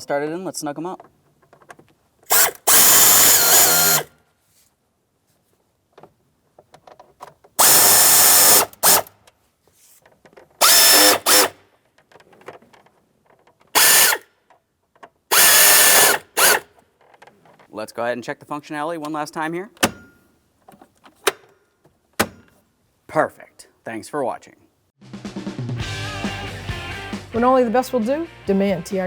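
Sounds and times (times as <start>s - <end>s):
power drill motor whine: 2.3s - 4.1s, 7.6s - 9.0s, 10.6s - 11.6s, 13.8s - 14.2s, 15.3s - 16.6s.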